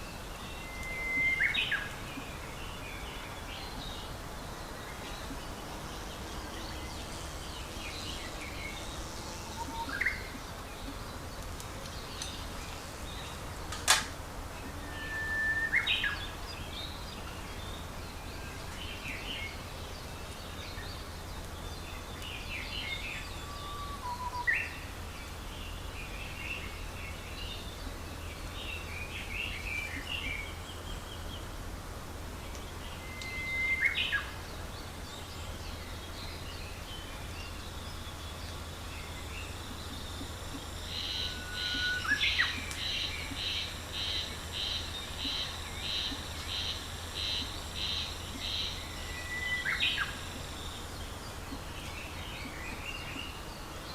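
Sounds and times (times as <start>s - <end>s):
sharp click: 13.7s - 14.2s
birds chirping and calling: 39.2s - 53.5s.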